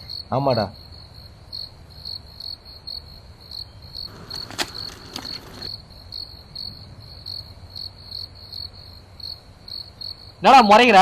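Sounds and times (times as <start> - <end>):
crickets chirping: 1.5 - 5.8
sharp clicks: 4.1 - 5.7.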